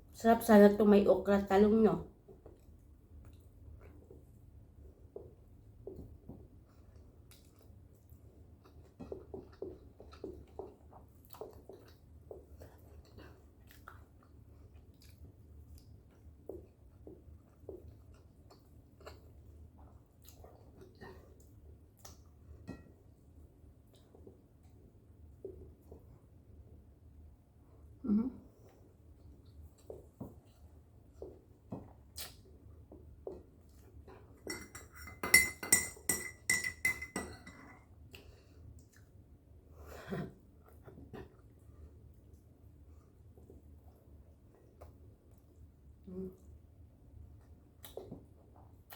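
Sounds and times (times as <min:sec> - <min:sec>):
soft chewing: 0:02.2 - 0:35.2, 0:37.0 - 0:48.9
mouth smacks and clicks: 0:32.2 - 0:32.4
spoon clinking on ceramic: 0:34.4 - 0:37.8.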